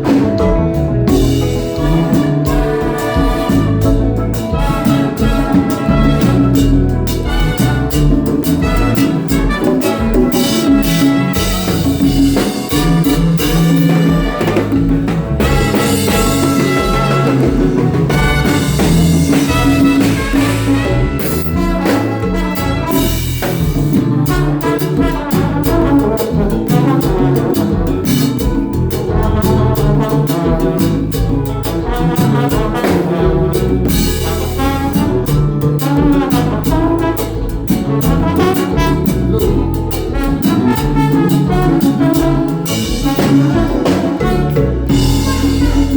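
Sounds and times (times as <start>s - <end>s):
brass horn section: 0.0s - 45.9s
drum kit beat: 0.0s - 45.9s
live band playing dance music: 0.0s - 45.9s.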